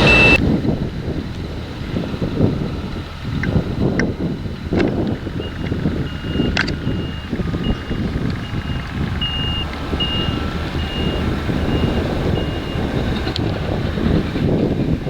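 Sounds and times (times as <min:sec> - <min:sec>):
reversing alarm beeping: 0:00.0 - 0:00.4, 0:05.3 - 0:13.3
heavy machinery rumble: 0:00.0 - 0:15.0.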